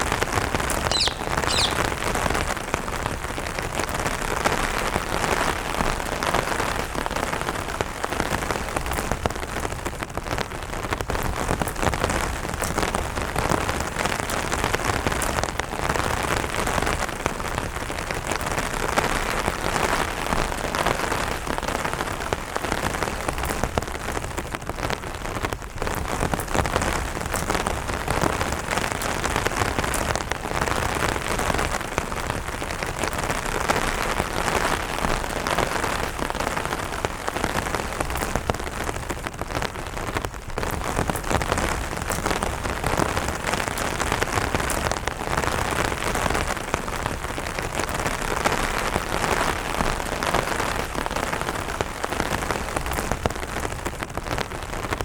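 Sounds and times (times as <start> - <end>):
light rain on an umbrella: 0.0 - 55.0.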